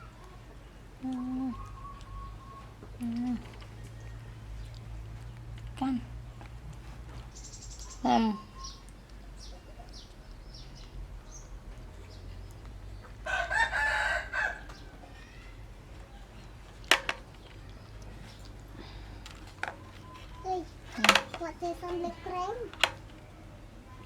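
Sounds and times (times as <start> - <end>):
rooster crowing: 13.2 - 15.0.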